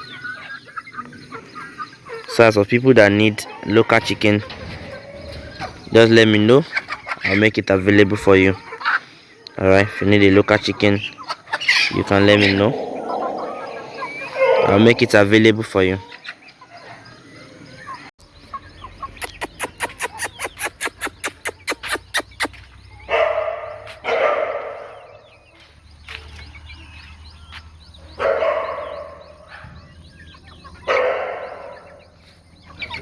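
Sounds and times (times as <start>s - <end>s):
loud fowl calls: 11.6s - 15.4s
harsh sharp bird notes: 11.8s - 15.5s.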